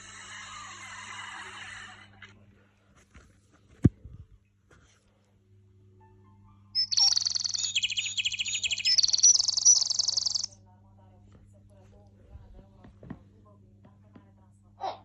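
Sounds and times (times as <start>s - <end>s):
parrot trilling call: 6.8s - 10.5s.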